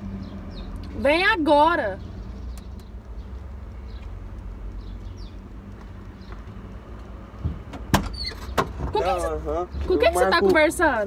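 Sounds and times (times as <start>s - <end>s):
sharp knocks and clicks: 2.5s - 9.0s.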